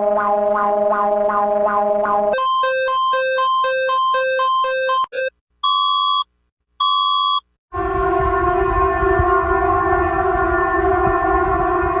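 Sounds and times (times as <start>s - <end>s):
steady alarm tone: 2.4s - 5.3s
short electronic beep: 2.4s - 6.2s.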